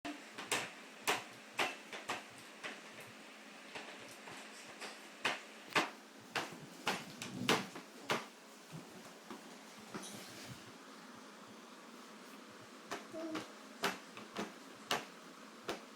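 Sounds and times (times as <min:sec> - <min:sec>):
baby making clicks and taps: 0:12.9 - 0:14.0.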